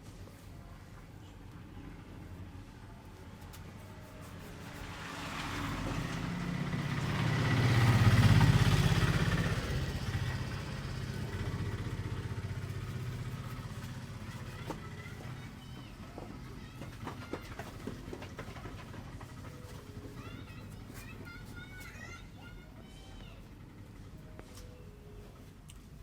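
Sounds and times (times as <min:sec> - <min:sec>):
vehicle engine passing by: 0:03.6 - 0:15.8.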